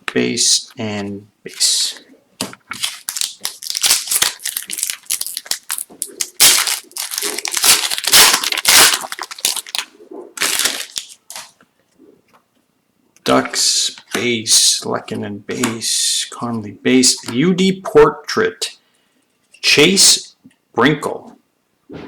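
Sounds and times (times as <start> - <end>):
plastic wrapper crinkling and tearing: 2.7 - 11.6.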